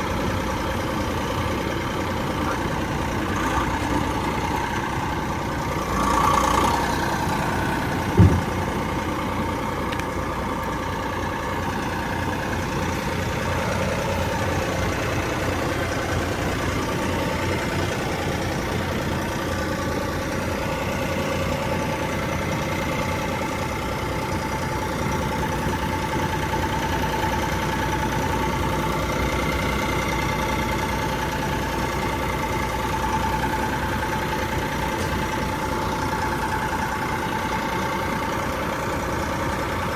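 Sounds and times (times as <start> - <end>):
stump grinder engine running: 0.0 - 39.9
sharp knock: 8.1 - 8.7.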